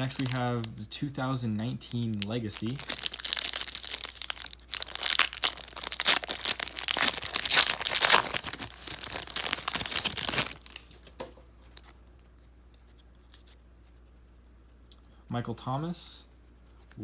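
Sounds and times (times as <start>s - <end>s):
card pack wrapper tearing: 0.0s - 0.8s, 1.8s - 11.1s.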